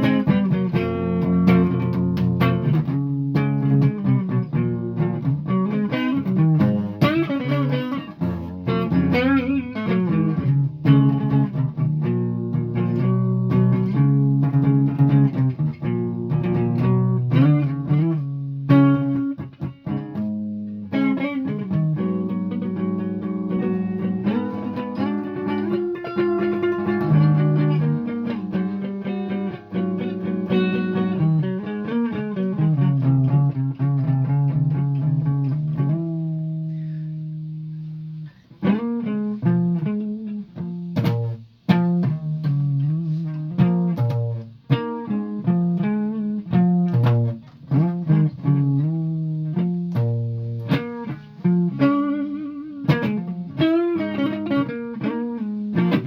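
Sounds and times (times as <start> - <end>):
solo guitar playing: 0.0 - 56.0.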